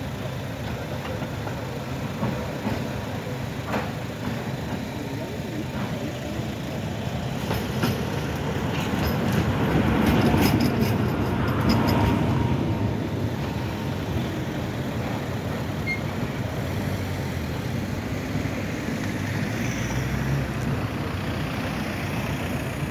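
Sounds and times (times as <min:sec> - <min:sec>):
street noise: 0:00.0 - 0:22.9
tram rumbling past: 0:00.0 - 0:22.9
tram wheels clicking: 0:00.0 - 0:22.9.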